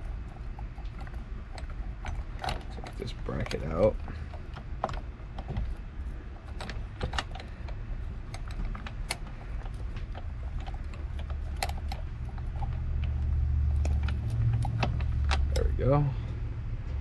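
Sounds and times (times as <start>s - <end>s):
steady low hum: 0.0s - 17.0s
metallic clicks of hand tools: 6.5s - 15.7s.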